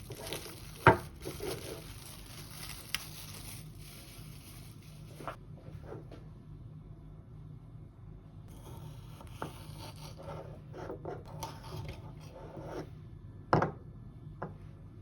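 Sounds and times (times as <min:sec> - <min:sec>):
objects scraping and rubbing: 0:00.0 - 0:06.2, 0:08.5 - 0:13.0
steady low hum: 0:00.0 - 0:15.0.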